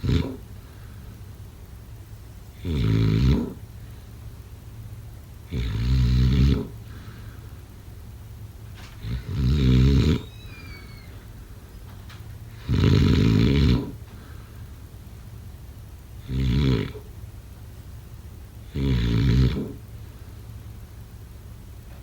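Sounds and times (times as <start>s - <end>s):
person snoring: 2.6s - 3.6s.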